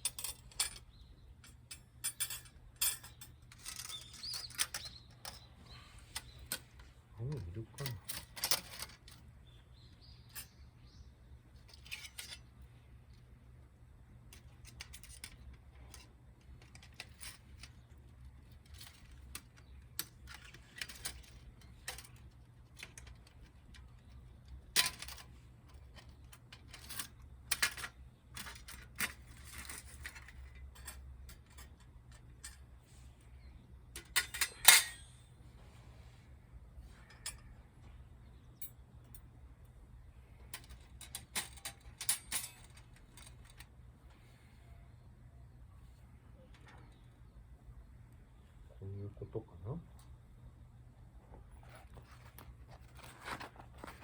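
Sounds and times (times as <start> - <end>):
clatter of parts: 0.0 - 5.5, 7.8 - 9.3, 11.6 - 13.2, 14.3 - 32.8, 33.9 - 35.2, 40.4 - 43.8, 51.6 - 54.0
metal parts clicking and clinking: 0.0 - 5.5, 6.1 - 6.9, 7.8 - 9.3, 11.6 - 13.2, 14.3 - 32.8, 33.9 - 35.2, 37.0 - 37.5, 40.4 - 43.8, 51.6 - 54.0
rustling: 51.4 - 54.0.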